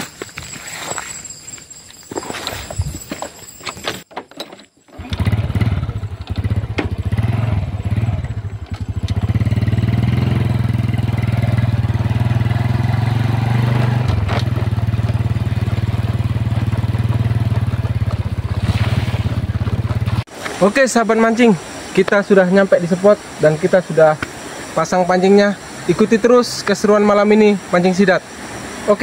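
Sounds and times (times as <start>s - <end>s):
small motorcycle engine running: 4.9s - 20.3s.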